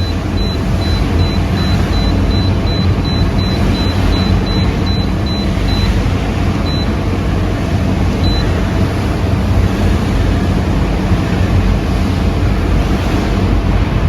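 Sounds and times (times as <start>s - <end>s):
short high electronic beeps: 0.0s - 6.0s, 6.6s - 6.9s, 8.2s - 8.5s
steady loud rushing noise: 0.0s - 14.0s.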